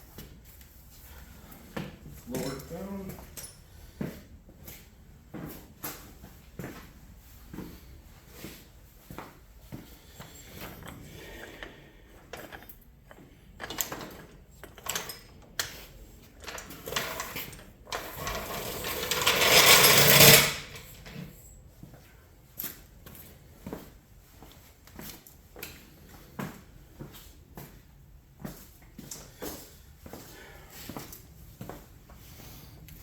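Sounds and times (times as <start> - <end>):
tools clicking and knocking: 10.6 - 21.2.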